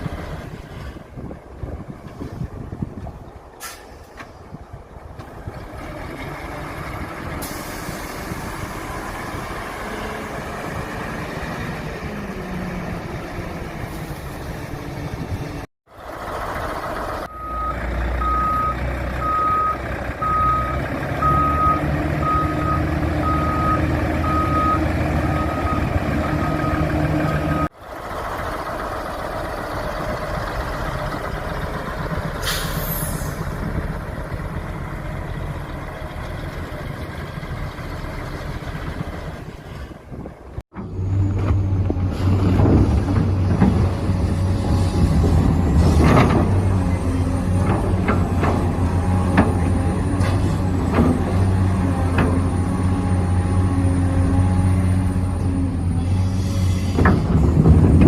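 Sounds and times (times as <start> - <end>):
simulated diesel truck engine: 0.0 - 58.0
reversing beeper: 17.3 - 27.7.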